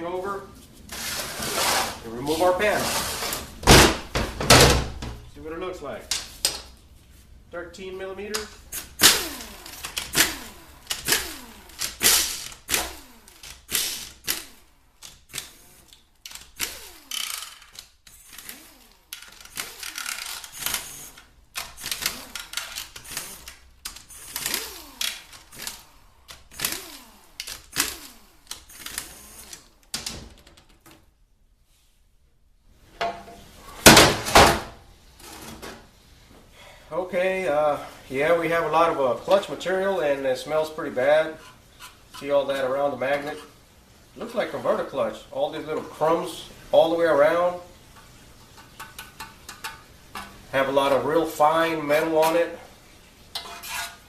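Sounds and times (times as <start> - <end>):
hand ratchet clicking: 8.4 - 30.0.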